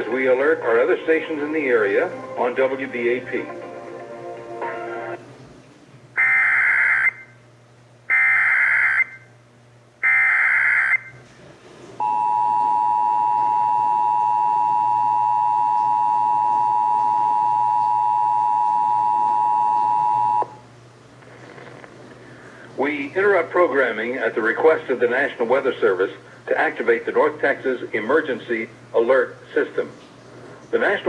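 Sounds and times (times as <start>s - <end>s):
two-tone attention signal: 12.0s - 20.6s.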